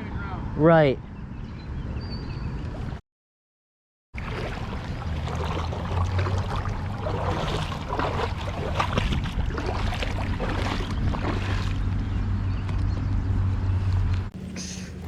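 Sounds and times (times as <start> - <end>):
river water splashing: 4.2 - 12.4
wind rumble on microphone: 4.2 - 14.3.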